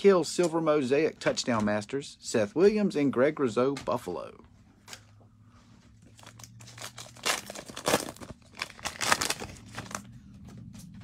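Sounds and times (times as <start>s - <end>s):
thin plastic crinkling: 6.0s - 10.1s.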